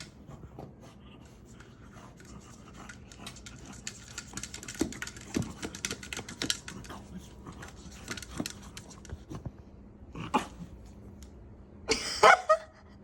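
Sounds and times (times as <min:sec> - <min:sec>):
dog scratching and chewing: 0:00.0 - 0:09.5.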